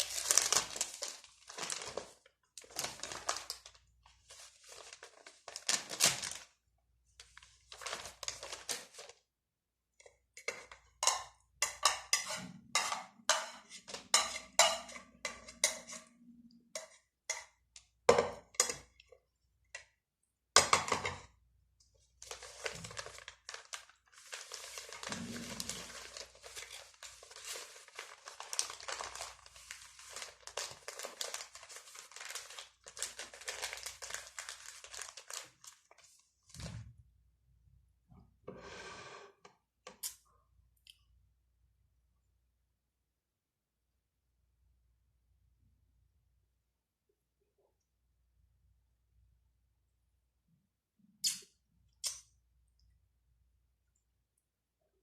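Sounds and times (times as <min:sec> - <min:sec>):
food rustling: 0:00.0 - 0:06.6, 0:22.2 - 0:36.3.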